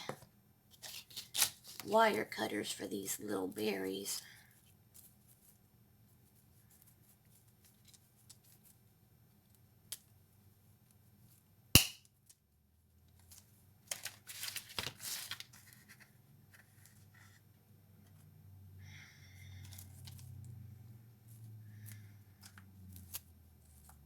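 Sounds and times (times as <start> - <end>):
loud snap: 11.8 - 12.0.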